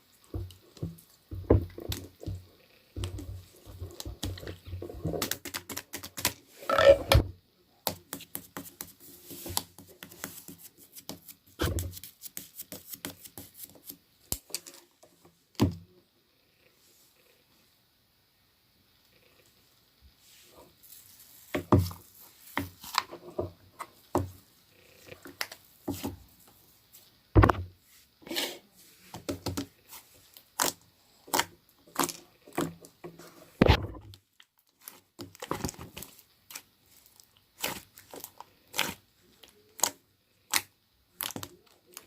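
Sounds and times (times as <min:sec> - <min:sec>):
slime crackling and popping: 0:30.6 - 0:32.2, 0:34.4 - 0:42.0.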